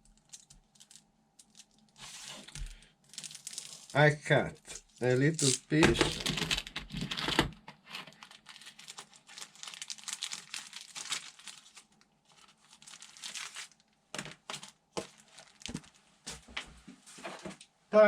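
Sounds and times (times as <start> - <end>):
scratching and crinkling plastic: 0.0 - 17.6.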